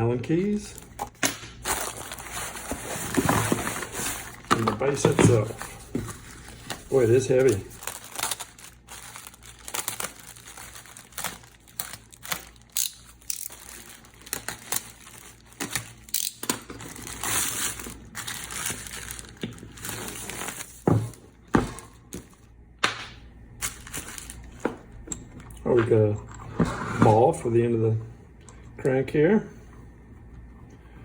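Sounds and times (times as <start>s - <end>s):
packaging crinkling: 0.7s - 20.8s, 23.6s - 24.6s.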